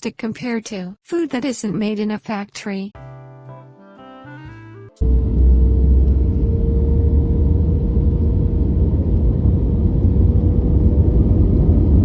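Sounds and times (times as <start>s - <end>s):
airplane engine rumble in flight: 5.0s - 12.0s.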